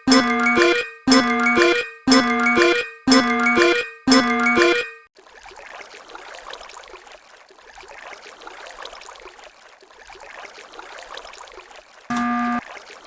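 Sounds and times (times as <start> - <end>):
electronic beep: 0.0 - 5.1.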